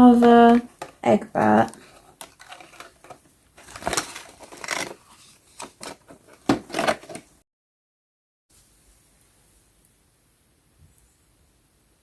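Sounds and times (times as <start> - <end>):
rustling of box packaging: 0.0 - 7.4.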